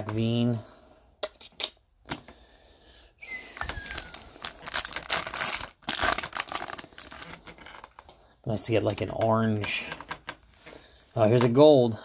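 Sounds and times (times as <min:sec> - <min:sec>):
foil wrapper crinkling: 0:03.6 - 0:08.0
foil wrapper tearing: 0:03.8 - 0:07.8.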